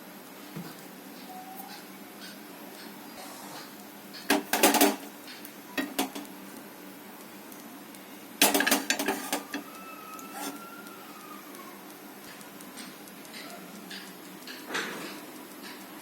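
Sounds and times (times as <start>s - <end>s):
utensil scraping metal pan: 8.4s - 9.6s, 10.3s - 10.6s.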